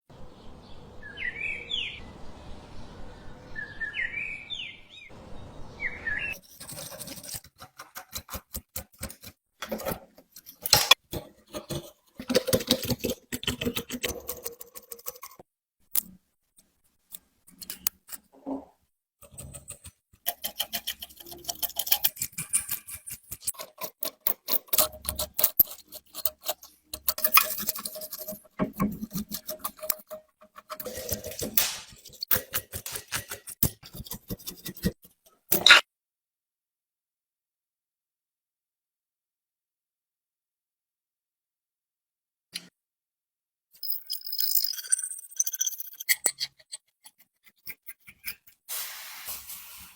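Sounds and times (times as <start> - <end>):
birds chirping: 0.2 - 6.4
tools clicking and knocking on metal: 6.7 - 15.4, 19.2 - 35.8.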